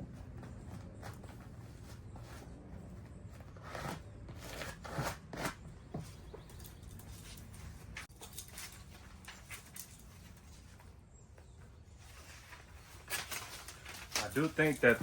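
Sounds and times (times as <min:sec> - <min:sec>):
insulation rustling and crinkling: 0:06.4 - 0:15.0.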